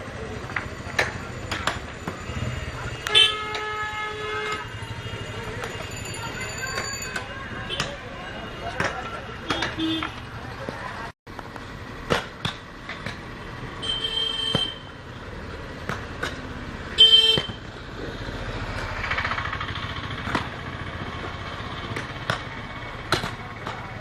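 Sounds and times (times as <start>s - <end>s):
street traffic: 0.0s - 24.0s
vehicle horn honks: 3.0s - 5.2s, 9.7s - 10.2s, 13.8s - 14.9s, 17.0s - 17.6s
vehicle passing: 17.7s - 24.0s.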